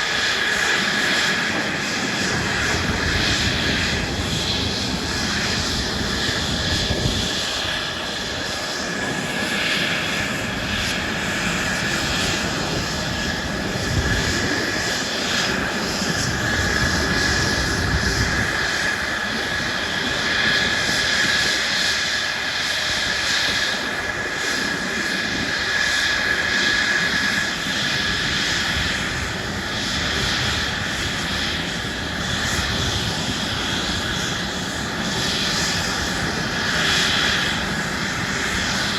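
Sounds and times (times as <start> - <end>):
airplane engine roar: 0.0 - 38.9.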